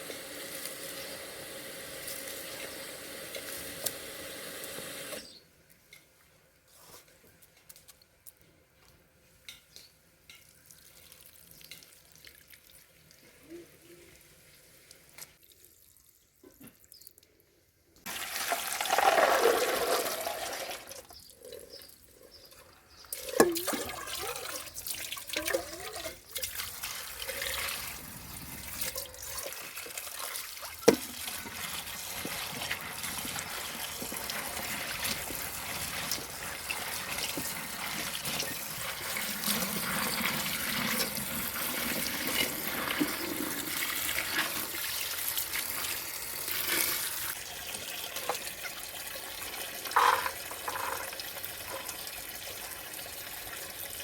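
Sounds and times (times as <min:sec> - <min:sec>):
faint handling sounds: 0:05.7 - 0:10.0
water pouring into a container: 0:18.1 - 0:21.6, 0:23.1 - 0:54.0.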